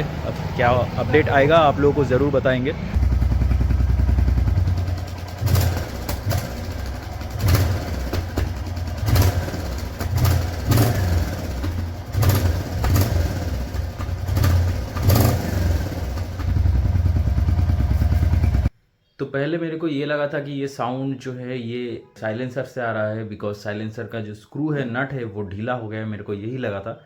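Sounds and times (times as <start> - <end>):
motorcycle engine rumbling: 0.0 - 18.7
engine tappet ticking: 1.2 - 18.7.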